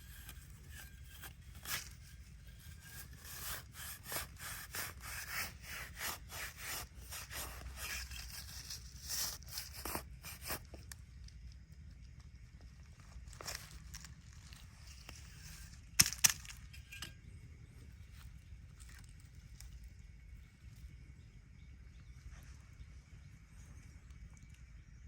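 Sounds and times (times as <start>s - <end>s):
scraping and rubbing strokes: 0.0s - 10.9s.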